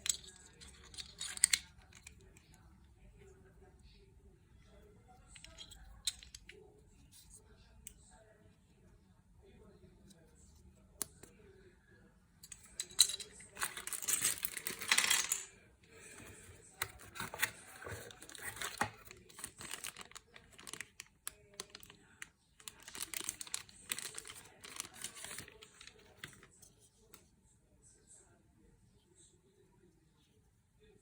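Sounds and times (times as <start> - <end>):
parts clicking and knocking: 12.4 - 15.5
packaging crinkling and rustling: 16.3 - 22.0, 22.6 - 26.5.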